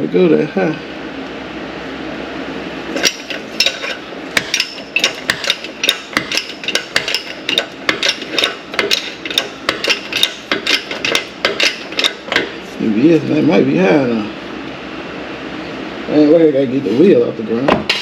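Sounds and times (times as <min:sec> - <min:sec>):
metal-on-metal strikes ringing: 0:03.0 - 0:12.6.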